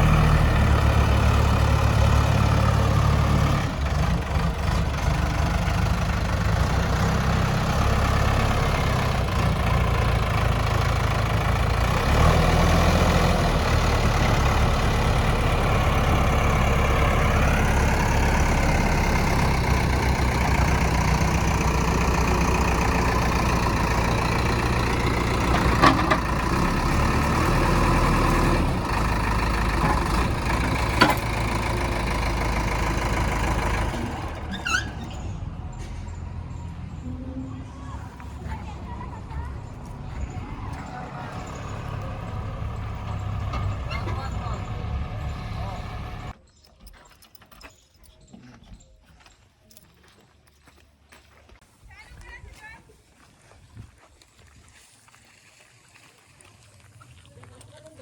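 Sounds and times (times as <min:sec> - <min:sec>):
diesel engine idling: 0:00.0 - 0:46.4.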